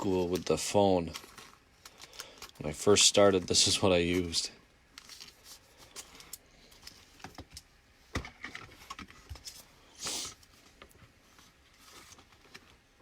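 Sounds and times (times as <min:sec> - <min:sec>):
cards rustling: 0:00.0 - 0:07.6.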